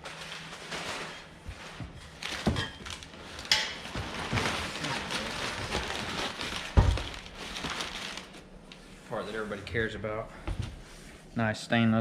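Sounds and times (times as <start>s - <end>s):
packing material rustling: 0.0s - 8.5s.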